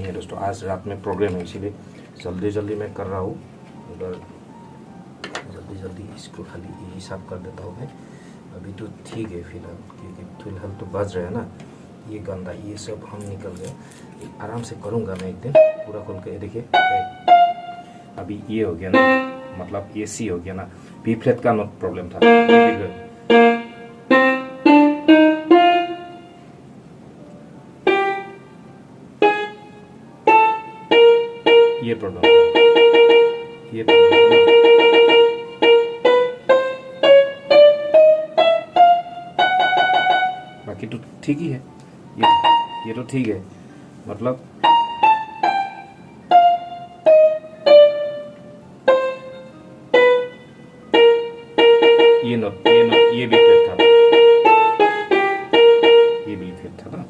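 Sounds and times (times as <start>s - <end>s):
keyboard single notes: 13.0s - 20.1s, 21.0s - 43.6s, 44.6s - 56.8s.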